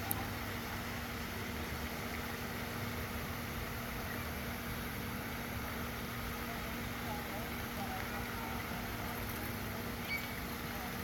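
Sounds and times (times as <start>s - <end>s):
low motor hum: 0.0s - 11.0s.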